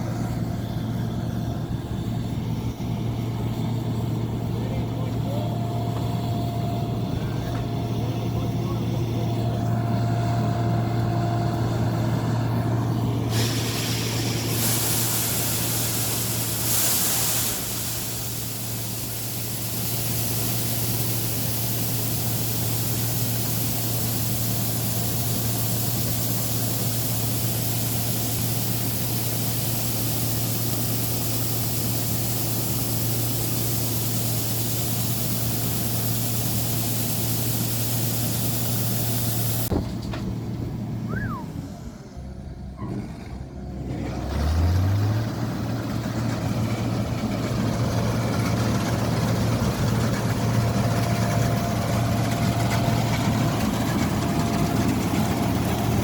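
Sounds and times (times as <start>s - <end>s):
combine harvester engine hum: 0.0s - 56.0s
rushing noise: 12.8s - 39.7s.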